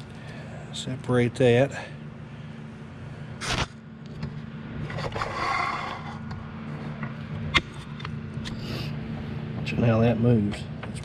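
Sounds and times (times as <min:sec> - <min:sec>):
steady low hum: 0:00.0 - 0:11.0
metal scraping: 0:04.8 - 0:06.2.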